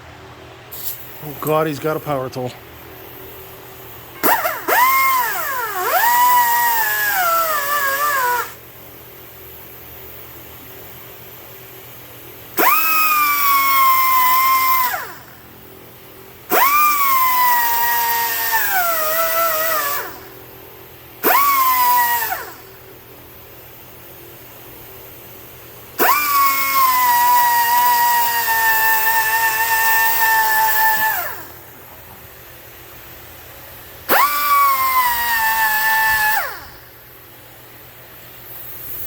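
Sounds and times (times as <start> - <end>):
electric power tool whining: 4.2 - 8.6, 16.5 - 20.3, 21.2 - 22.7, 26.0 - 32.0, 34.1 - 37.0.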